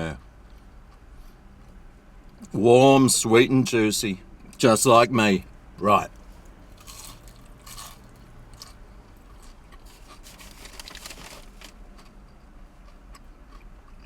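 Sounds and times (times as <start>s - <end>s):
person chewing crunchy food: 6.1s - 14.0s.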